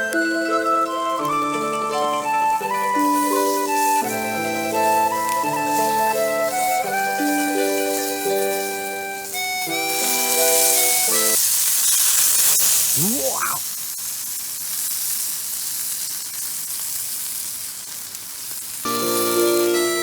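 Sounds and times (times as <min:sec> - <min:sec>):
light background music: 0:00.0 - 0:11.4, 0:18.9 - 0:20.0
food sizzling in a pan: 0:02.6 - 0:20.0.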